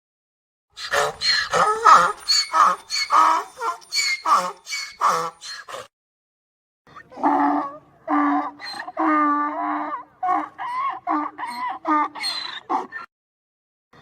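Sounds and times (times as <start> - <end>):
donkey braying: 0.8 - 5.8.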